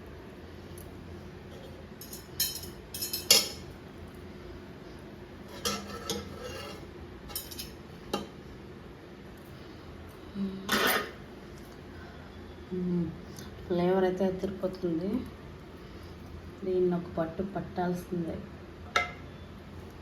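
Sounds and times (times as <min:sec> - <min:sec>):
cutlery and dishes clinking: 0:02.0 - 0:03.6, 0:05.5 - 0:08.3.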